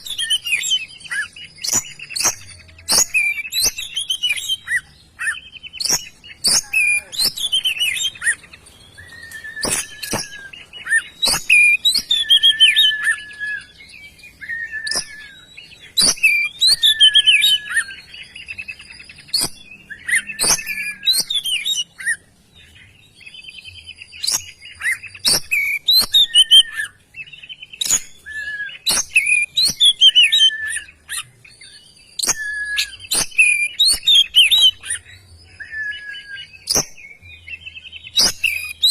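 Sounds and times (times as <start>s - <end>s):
bird sharp clicking calls: 0.0s - 8.4s, 9.2s - 13.3s, 32.2s - 35.0s
bird singing whistled phrases: 0.0s - 38.9s.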